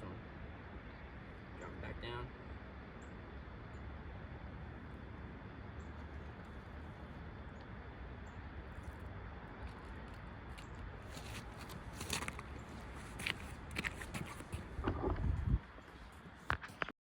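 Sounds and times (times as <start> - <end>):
wind noise on microphone: 13.2 - 16.9.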